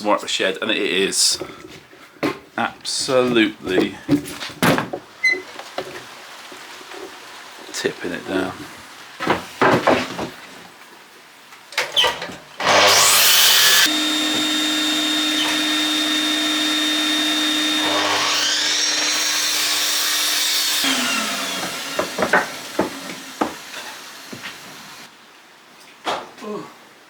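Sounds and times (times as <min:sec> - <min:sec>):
knocks of wood being handled: 0:01.4 - 0:05.1, 0:21.4 - 0:25.0
electric saw cutting timber: 0:12.6 - 0:25.1.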